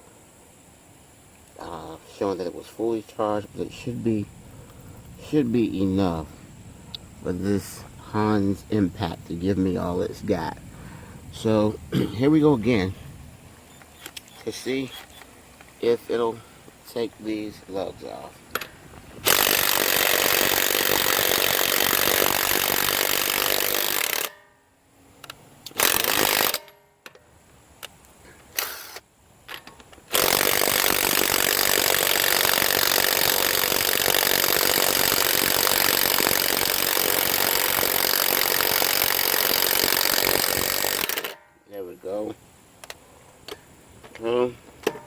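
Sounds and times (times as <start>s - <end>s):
impact wrench hammering: 18.6s - 24.5s, 30.1s - 41.5s.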